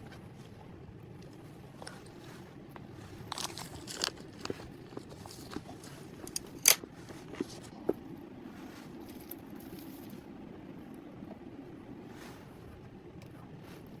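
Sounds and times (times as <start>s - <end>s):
chewing: 1.2s - 7.7s
utensils clicking against dishes: 6.2s - 6.8s.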